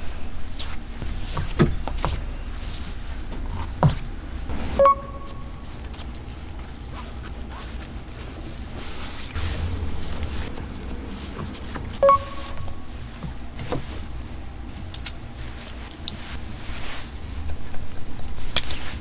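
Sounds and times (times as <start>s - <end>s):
low hum: 1.8s - 5.8s, 9.4s - 14.7s
short pitched tone: 4.5s - 5.7s, 9.4s - 13.4s.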